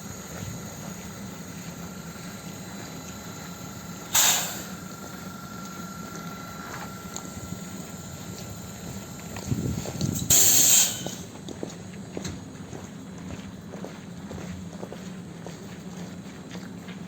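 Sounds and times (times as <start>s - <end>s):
electric train humming: 0.0s - 11.4s
compressed air hissing: 3.8s - 4.9s, 8.2s - 11.2s.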